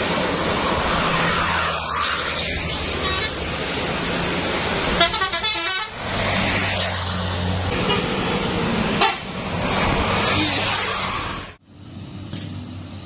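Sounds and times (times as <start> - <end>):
road traffic noise: 0.0 - 13.0
bus horn blaring: 2.9 - 3.4, 4.9 - 6.0, 7.8 - 8.2, 9.0 - 9.3.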